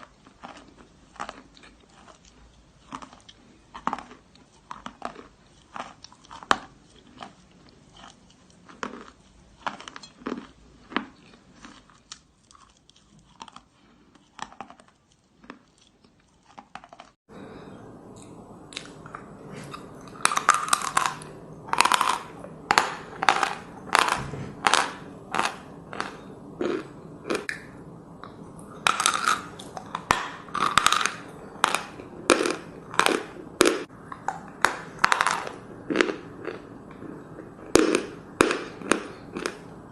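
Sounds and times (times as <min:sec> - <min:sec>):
chalk crunching being chewed: 0:00.0 - 0:17.2, 0:34.1 - 0:39.6.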